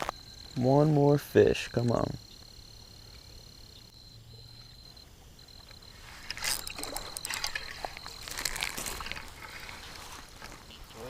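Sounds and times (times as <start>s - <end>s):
high insect trill: 0.0s - 11.0s
water splashing and sloshing: 5.5s - 10.6s.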